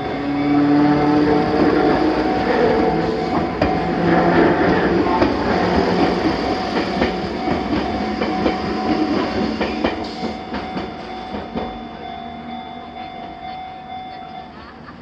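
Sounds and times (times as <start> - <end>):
train wheels clacking over rail joints: 0.2 - 12.0.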